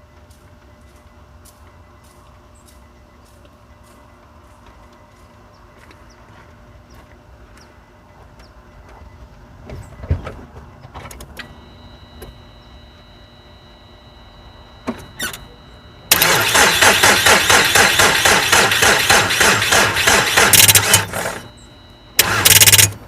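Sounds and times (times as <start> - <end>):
starter cranking engine: 16.1 - 21.5, 22.2 - 23.0.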